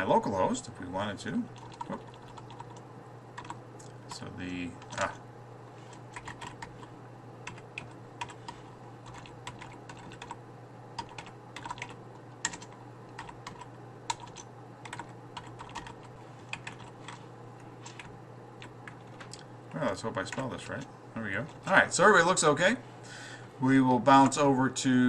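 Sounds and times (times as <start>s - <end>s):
steady low hum: 0.0s - 25.0s
keyboard typing: 1.6s - 2.8s, 3.4s - 4.2s, 5.9s - 8.4s, 9.0s - 10.4s, 11.0s - 17.2s, 17.8s - 19.4s.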